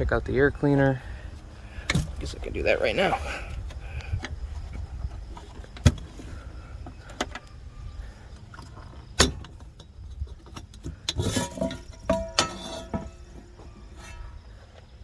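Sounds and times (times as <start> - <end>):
metal rattling and clinking: 8.5 - 14.3
metallic ring: 11.2 - 13.4
sharp metal knocks: 11.3 - 13.2.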